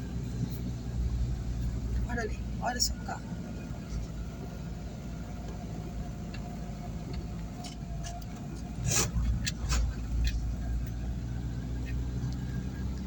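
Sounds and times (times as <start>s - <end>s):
motor vehicle rumbling: 0.0s - 13.0s.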